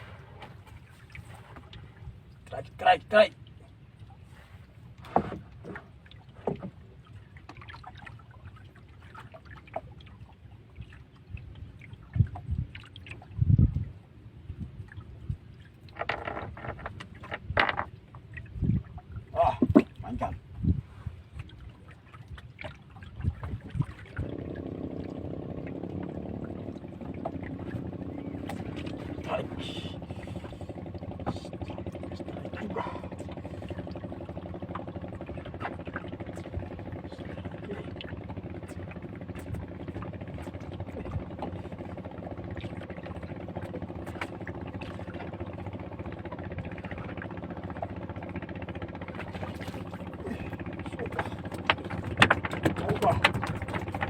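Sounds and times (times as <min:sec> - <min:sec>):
small boat engine running: 0:00.0 - 0:54.0
knocks on boat: 0:05.0 - 0:05.8, 0:06.4 - 0:06.8, 0:19.5 - 0:20.0, 0:51.4 - 0:54.0
faint clicks and knocks: 0:15.9 - 0:18.0, 0:51.4 - 0:54.0.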